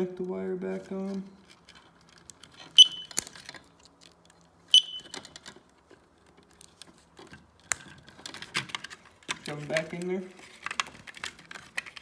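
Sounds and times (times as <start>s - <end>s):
plastic clicks and handling: 0.8s - 12.0s
smoke detector beeps: 2.8s - 3.1s, 4.7s - 5.1s.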